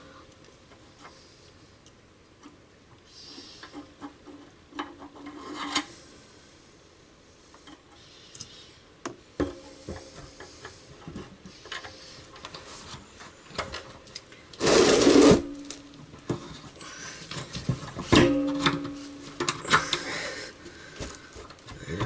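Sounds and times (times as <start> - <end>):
loud rasping burst: 14.6 - 15.6.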